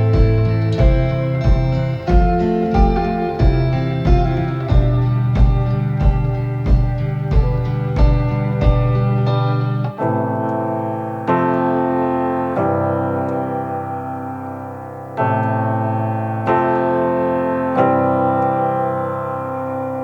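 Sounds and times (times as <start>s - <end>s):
slow piano chords: 0.0s - 20.0s.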